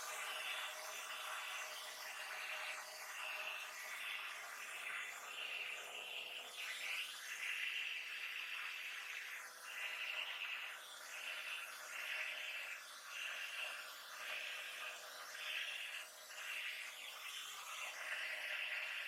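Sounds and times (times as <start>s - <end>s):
hair dryer running: 8.1s - 19.0s.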